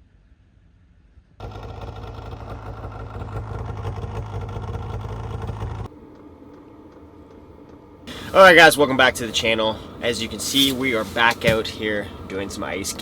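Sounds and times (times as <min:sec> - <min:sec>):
engine rumbling: 0:00.1 - 0:13.0
quiet steady hum: 0:05.9 - 0:13.0.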